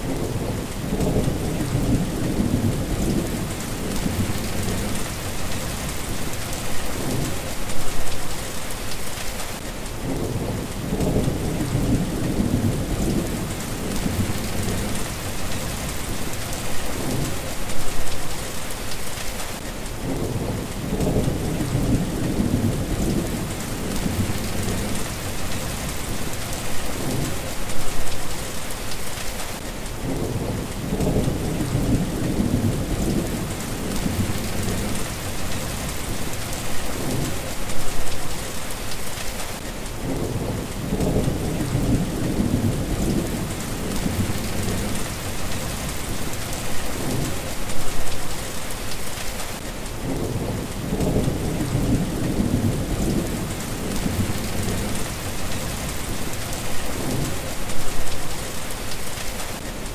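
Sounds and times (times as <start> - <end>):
steady rain falling: 0.0 - 59.9
thunder rumbling: 0.1 - 8.1, 10.0 - 18.2, 20.0 - 28.1, 30.0 - 38.2, 40.0 - 48.2, 50.0 - 58.2.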